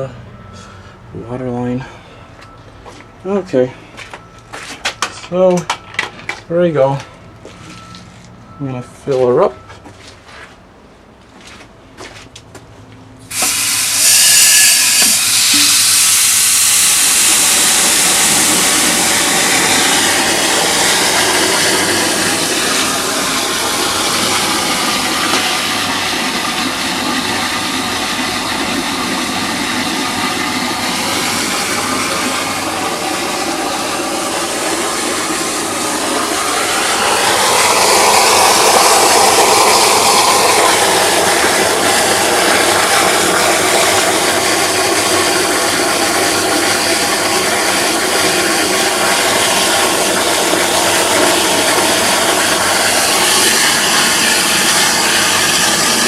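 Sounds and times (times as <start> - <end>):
water filling toilet tank: 13.3 - 56.0.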